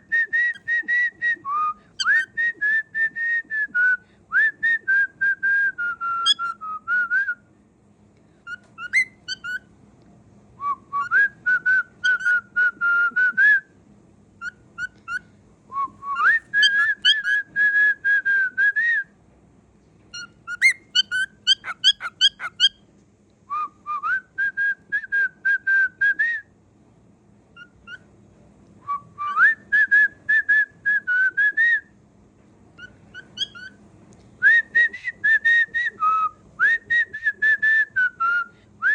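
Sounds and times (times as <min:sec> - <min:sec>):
cockatiel whistling a song: 0:00.1 - 0:07.4, 0:08.4 - 0:09.7, 0:10.6 - 0:13.6, 0:14.4 - 0:15.2, 0:15.8 - 0:19.0, 0:20.1 - 0:22.8, 0:27.5 - 0:28.0, 0:28.9 - 0:31.9, 0:32.8 - 0:33.8, 0:34.4 - 0:38.9
cockatiel chirps: 0:02.0 - 0:02.3, 0:06.2 - 0:06.6, 0:08.5 - 0:09.6, 0:14.4 - 0:15.2, 0:16.4 - 0:17.4, 0:20.1 - 0:22.8, 0:27.6 - 0:28.0, 0:32.8 - 0:33.8.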